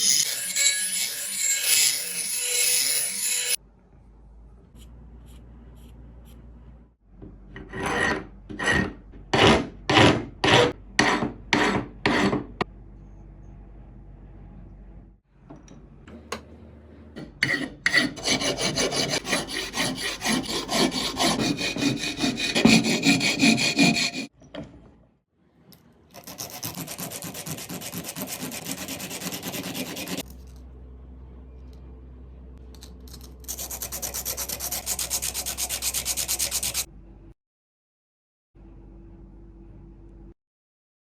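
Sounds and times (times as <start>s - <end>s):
steady low hum: 3.6s - 7.5s, 30.2s - 33.8s.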